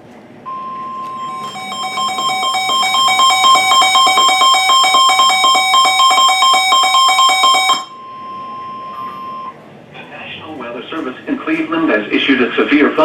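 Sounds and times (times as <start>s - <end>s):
steady warning alarm tone: 0.5s - 9.6s
rapid electronic beeps: 0.8s - 9.5s.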